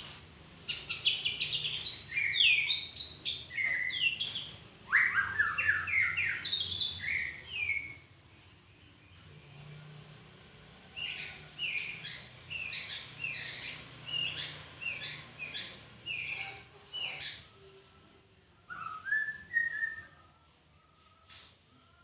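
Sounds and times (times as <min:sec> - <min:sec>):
songbird whistled notes: 0:00.9 - 0:08.0, 0:18.7 - 0:20.4.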